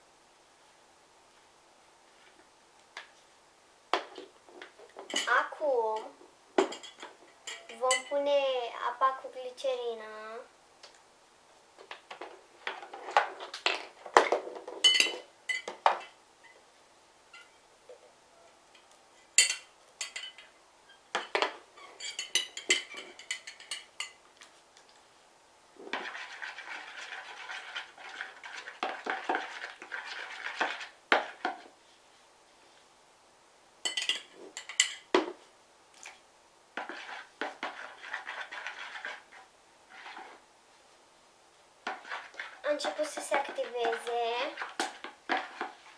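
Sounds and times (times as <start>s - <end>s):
utensil clinking against bowl: 6.0s - 8.2s, 14.8s - 16.2s, 18.8s - 20.5s, 21.2s - 24.2s, 33.9s - 35.1s
steady scraping in bowl: 25.8s - 31.7s, 36.8s - 40.4s, 41.8s - 45.9s.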